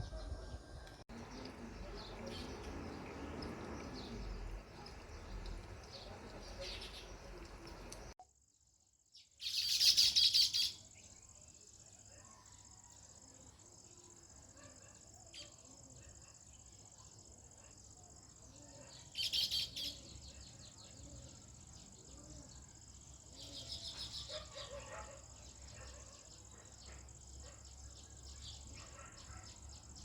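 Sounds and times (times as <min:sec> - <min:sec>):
sparrows chirping: 0:01.1 - 0:08.1, 0:09.2 - 0:11.3, 0:18.4 - 0:30.0.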